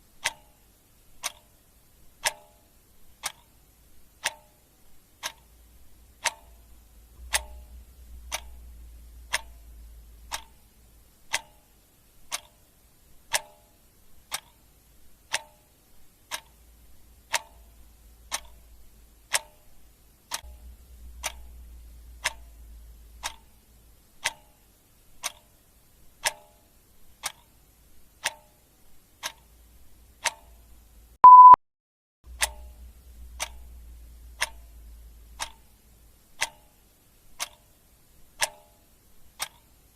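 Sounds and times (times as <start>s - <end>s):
clock ticking: 0.0s - 31.6s, 32.3s - 39.9s
faint low rumble: 4.8s - 12.3s, 16.5s - 24.4s, 32.3s - 36.4s
short beep: 31.2s - 31.6s.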